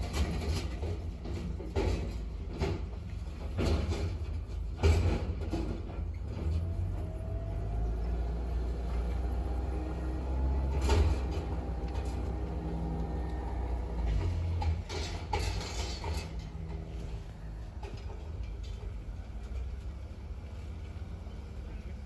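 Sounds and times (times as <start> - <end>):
knocks and clanks: 0.0 - 7.8, 10.1 - 19.9
vehicle rumble: 0.0 - 22.0.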